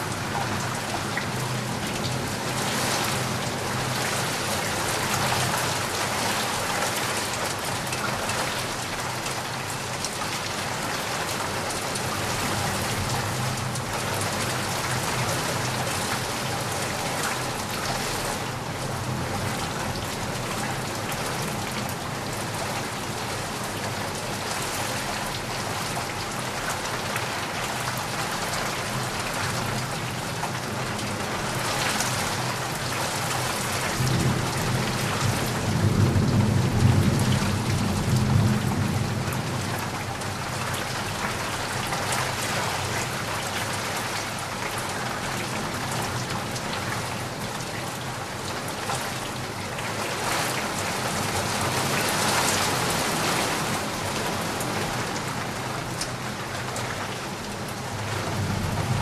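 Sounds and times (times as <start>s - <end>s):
heavy rain falling: 0.0s - 59.0s
low rumble of thunder: 33.7s - 41.0s, 57.8s - 59.0s.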